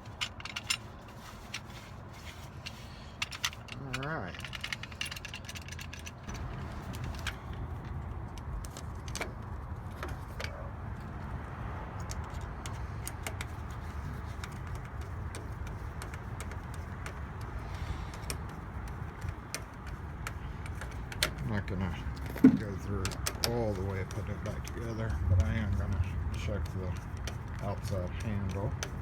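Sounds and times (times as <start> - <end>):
metallic clicks of lock parts: 0.0 - 1.8, 2.6 - 9.4
steady low rumble: 6.1 - 14.3, 24.0 - 29.0.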